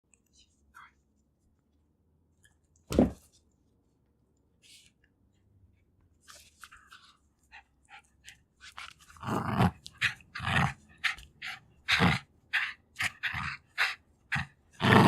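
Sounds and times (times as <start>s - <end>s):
dog growling: 9.1s - 15.0s.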